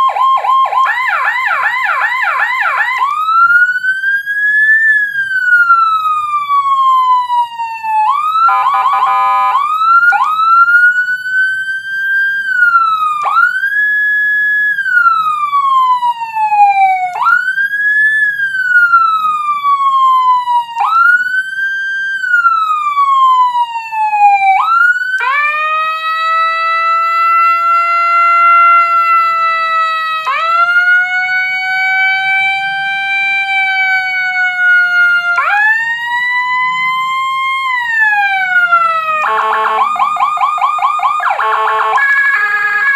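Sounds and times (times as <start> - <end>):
electronic siren wailing: 0.0 - 42.9
rapid siren warble: 24.2 - 42.9.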